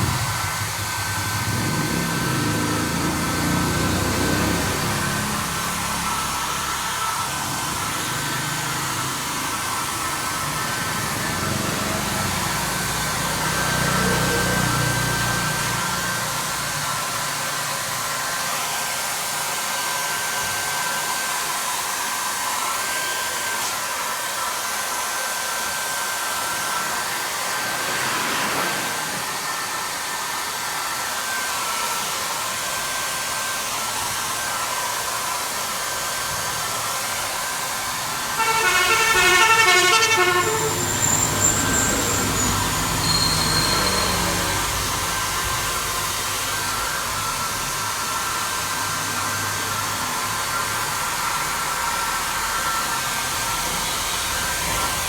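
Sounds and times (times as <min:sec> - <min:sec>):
steady rushing noise: 0:00.0 - 0:13.3, 0:26.4 - 0:31.1
horn beeping: 0:38.2 - 0:46.0.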